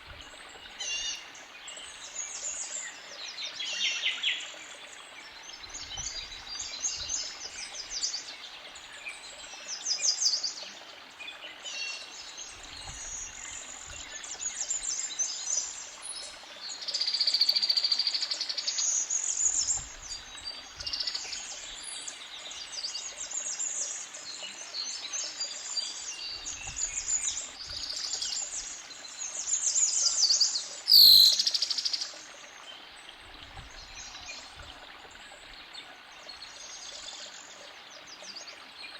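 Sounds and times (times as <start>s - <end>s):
creek bubbling: 0.0s - 38.9s
birds singing and chirping: 24.8s - 32.1s
sharp loud bird call: 30.9s - 31.5s.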